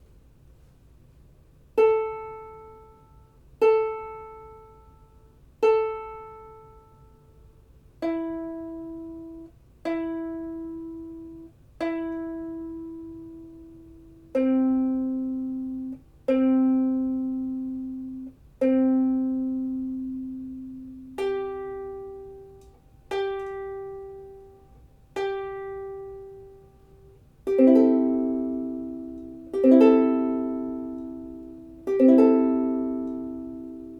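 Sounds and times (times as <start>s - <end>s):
ukulele strum: 1.8s - 7.3s, 8.0s - 33.9s
ukulele strings plucked: 8.0s - 33.9s.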